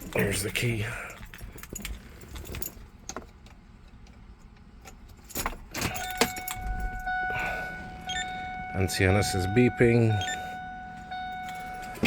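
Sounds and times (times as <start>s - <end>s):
car keys jangling: 0.0s - 3.4s, 4.8s - 12.0s
immobiliser electronic beep: 6.0s - 12.0s.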